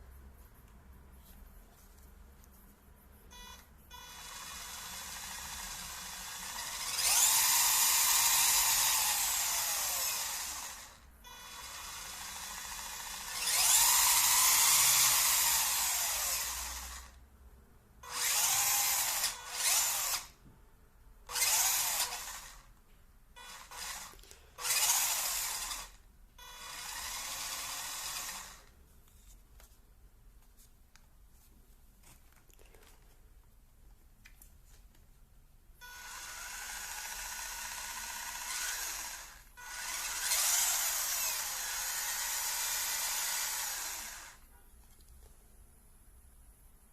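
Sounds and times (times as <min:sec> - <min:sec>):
rc car motor whining: 0:03.4 - 0:17.2, 0:18.0 - 0:20.4, 0:21.3 - 0:22.7, 0:23.4 - 0:28.7, 0:35.8 - 0:44.4.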